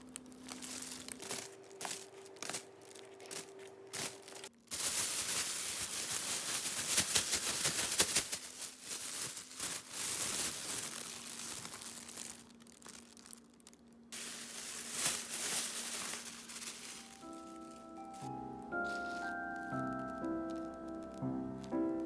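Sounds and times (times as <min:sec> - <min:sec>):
crinkling handling noise: 0:00.0 - 0:22.0
faint steady hum: 0:00.0 - 0:22.0.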